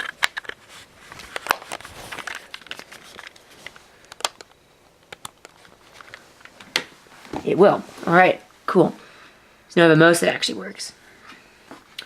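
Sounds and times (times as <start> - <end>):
crinkly plastic handling: 0.0 - 8.2.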